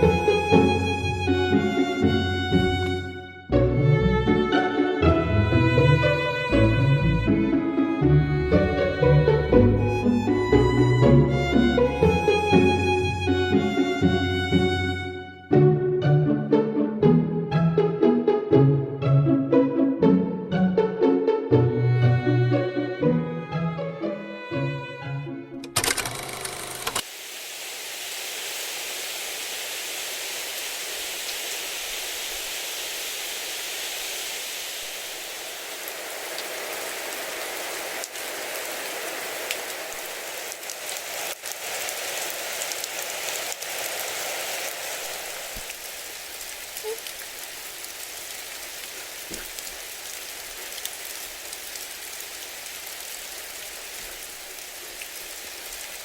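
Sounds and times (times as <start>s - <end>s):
steady rain falling: 0.0s - 16.8s, 25.8s - 56.0s.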